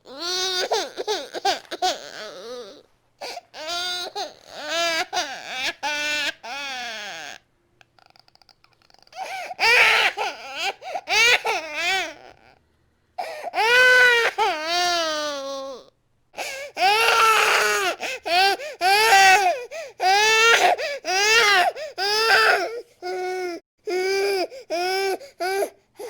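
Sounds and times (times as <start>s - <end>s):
infant crying: 0.0s - 7.4s, 9.2s - 12.6s, 13.2s - 25.8s
infant gasping for breath: 9.1s - 9.6s, 10.8s - 11.1s, 13.2s - 13.6s, 16.4s - 16.8s, 18.0s - 18.8s, 19.4s - 20.0s, 20.6s - 22.0s, 22.7s - 26.0s.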